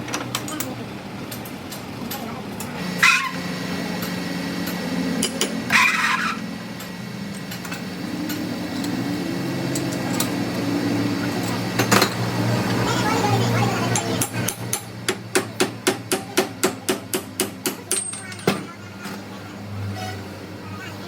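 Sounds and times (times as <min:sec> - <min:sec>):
noisy clatter: 0:00.0 - 0:19.3
machine motor humming: 0:00.9 - 0:15.3.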